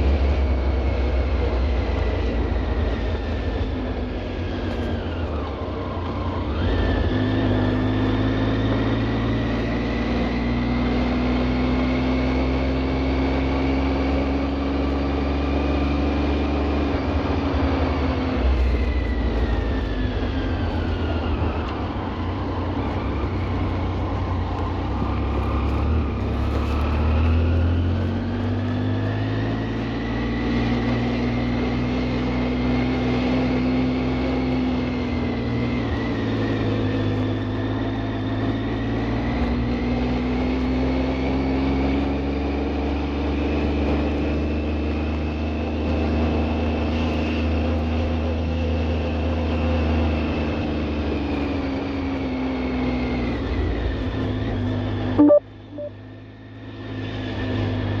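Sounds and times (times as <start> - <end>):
machine whine rising in pitch: 55.2 - 56.0.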